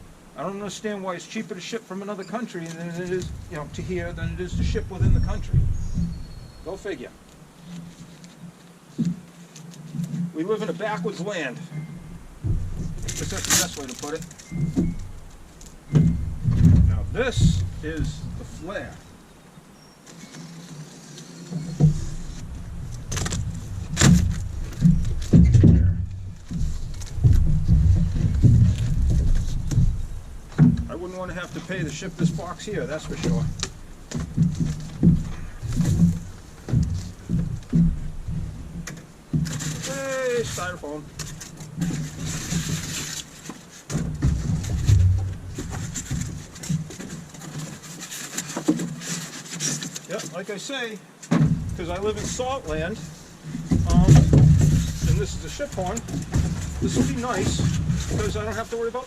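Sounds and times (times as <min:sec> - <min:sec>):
styrofoam and cardboard rustling: 0:01.6 - 0:11.5, 0:12.5 - 0:19.1, 0:39.4 - 0:59.0
heavy knocks: 0:03.0 - 0:07.3, 0:11.8 - 0:19.3, 0:21.6 - 0:43.2, 0:43.9 - 0:47.6, 0:51.3 - 0:59.0
sharp rustling clicks: 0:11.8 - 0:59.0
cardboard box thumps and scrapes: 0:21.5 - 0:38.8, 0:39.4 - 0:50.2, 0:51.3 - 0:59.0.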